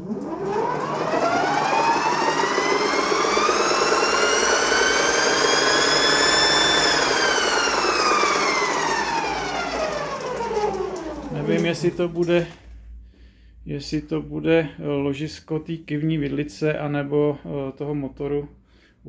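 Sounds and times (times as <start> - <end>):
electric motor whine: 0.0 - 12.2.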